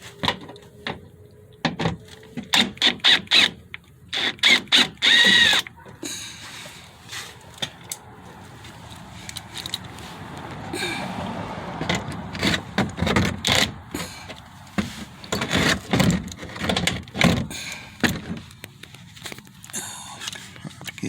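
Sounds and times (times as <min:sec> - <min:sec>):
rustling scrape: 0:06.2 - 0:10.6, 0:12.0 - 0:16.8.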